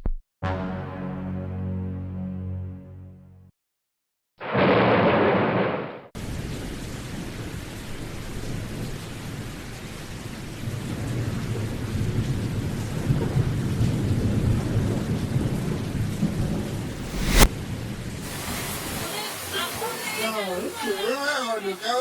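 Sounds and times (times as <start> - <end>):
heavy rain: 6.2 - 22.0
low rumble: 16.8 - 17.5.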